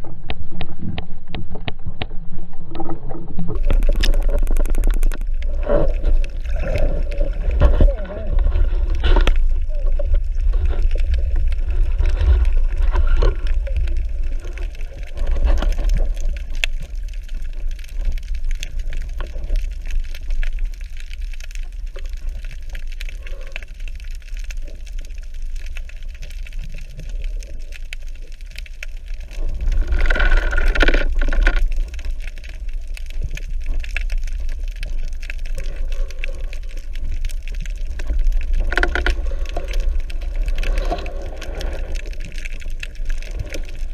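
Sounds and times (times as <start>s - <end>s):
faint gurgling: 0.0s - 20.8s
bubbling rush: 0.0s - 23.6s, 24.6s - 43.9s
underwater rumble of moving water: 0.0s - 43.9s.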